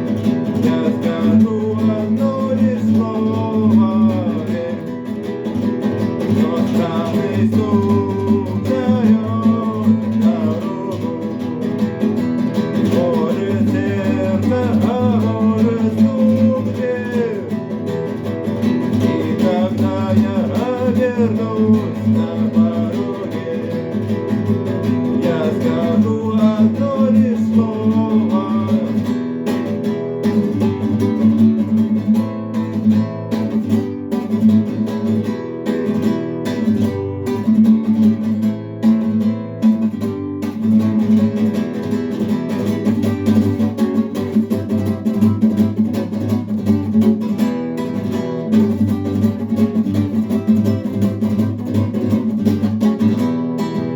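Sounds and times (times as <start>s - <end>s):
person singing: 0.0s - 29.8s
acoustic guitar strumming: 0.0s - 53.9s.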